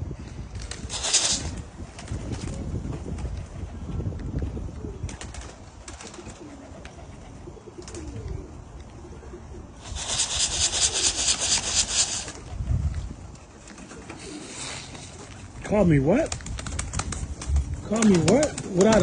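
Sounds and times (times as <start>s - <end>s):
rapid wing fluttering: 0.5s - 3.7s, 5.0s - 8.3s, 9.8s - 13.1s, 16.2s - 19.0s
pigeons cooing: 4.7s - 12.5s, 13.4s - 15.4s.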